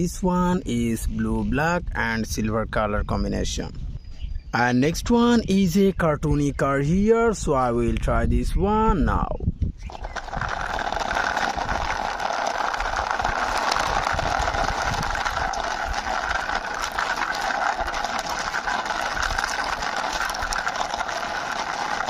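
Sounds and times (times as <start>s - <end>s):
toy car whirring rattle: 9.8s - 22.0s.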